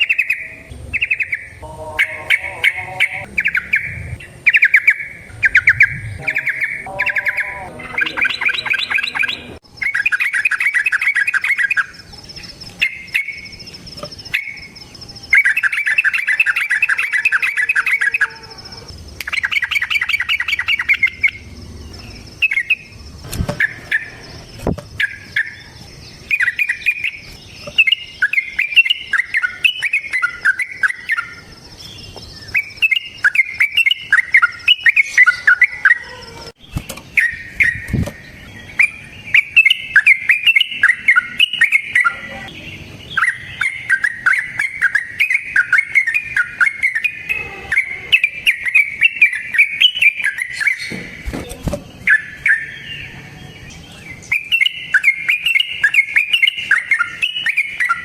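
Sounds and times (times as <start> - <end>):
faint steady high tone: 0.0 - 10.3
bulbul singing trills: 0.0 - 58.0.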